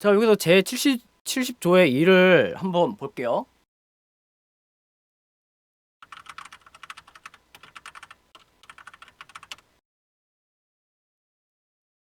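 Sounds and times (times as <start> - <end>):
computer keyboard typing: 6.0 - 9.7.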